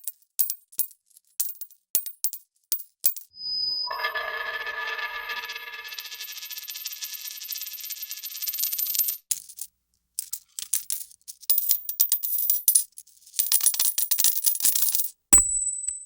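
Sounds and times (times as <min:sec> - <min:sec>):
high ringing tone: 0:03.4 - 0:07.6
coins clinking: 0:05.6 - 0:15.1.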